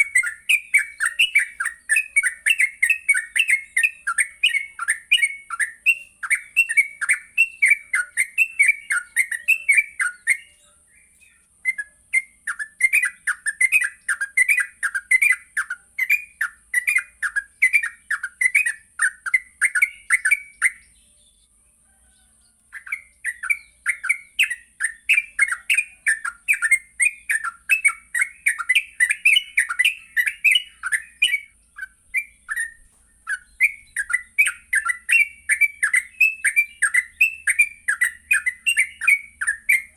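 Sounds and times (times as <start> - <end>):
bird chattering song: 0.0 - 39.9.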